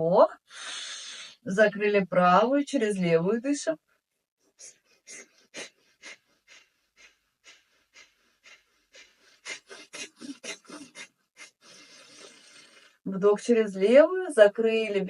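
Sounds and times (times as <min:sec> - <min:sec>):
person breathing through nostril: 0:00.5 - 0:01.4.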